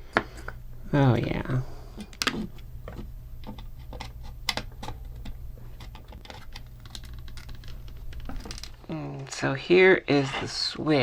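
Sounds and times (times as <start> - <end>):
low steady hum: 0.0 - 11.0
small plastic parts clicking: 3.4 - 8.8.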